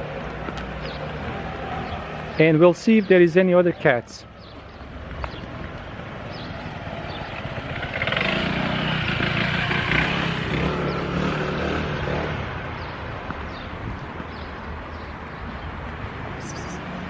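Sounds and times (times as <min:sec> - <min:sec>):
motor vehicle driving past: 0:06.3 - 0:12.8.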